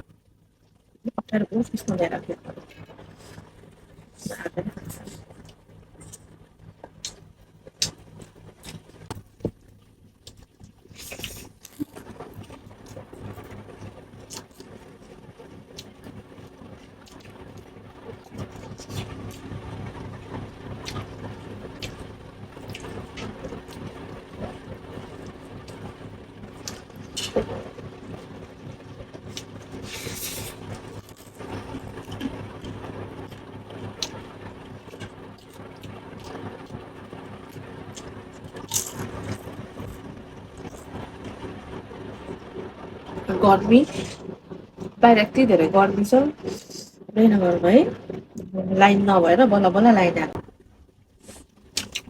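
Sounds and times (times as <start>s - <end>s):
low electrical hum: 0.0s - 52.0s
chewing: 9.8s - 13.5s, 51.2s - 52.0s.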